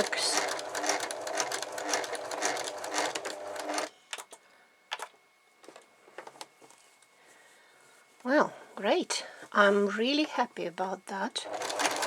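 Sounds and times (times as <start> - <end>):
sewing machine stitching: 0.0 - 3.9, 11.5 - 12.0.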